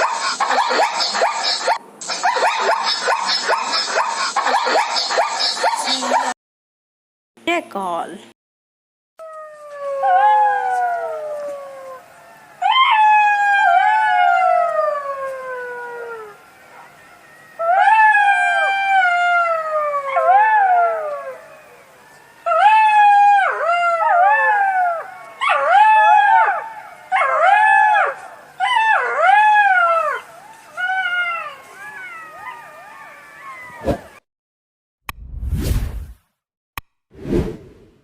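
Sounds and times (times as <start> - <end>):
jackal howling and yipping: 0.0 - 6.3, 17.6 - 21.8, 22.4 - 34.2.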